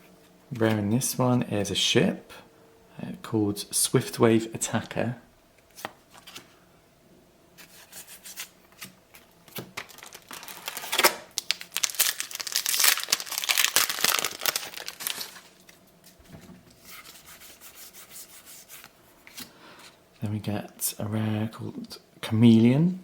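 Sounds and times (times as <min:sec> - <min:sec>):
wrapper crinkling and tearing: 0:09.2 - 0:15.8.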